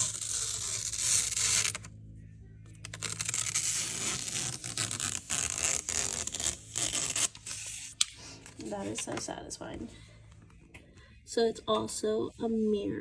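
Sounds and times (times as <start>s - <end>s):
plastic film peeling off: 0.0s - 1.9s, 2.7s - 9.1s.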